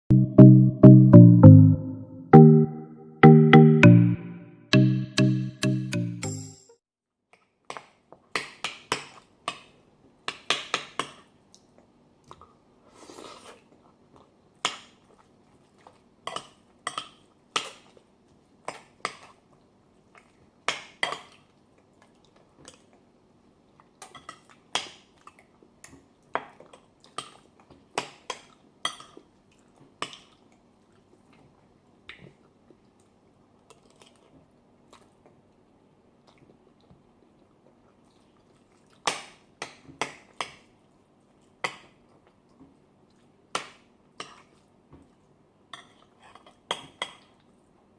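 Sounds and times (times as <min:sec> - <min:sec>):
chewing: 0:11.5 - 0:14.4, 0:15.0 - 0:18.0, 0:18.6 - 0:20.5, 0:32.3 - 0:39.1.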